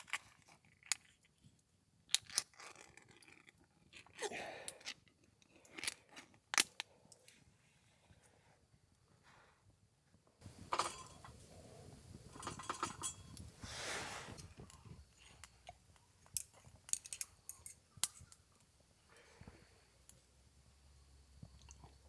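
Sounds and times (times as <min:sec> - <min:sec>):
clicks and knocks of hard objects: 0:10.4 - 0:13.6, 0:14.3 - 0:19.3.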